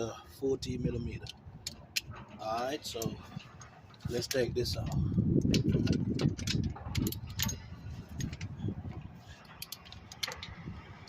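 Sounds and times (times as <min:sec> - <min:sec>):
metal clinking: 0:01.2 - 0:08.6
hand ratchet clicking: 0:04.2 - 0:08.6, 0:09.4 - 0:10.7.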